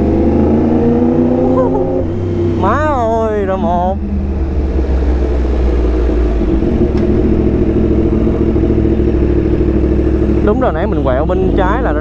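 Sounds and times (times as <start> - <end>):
motorcycle engine running: 1.4 - 12.0.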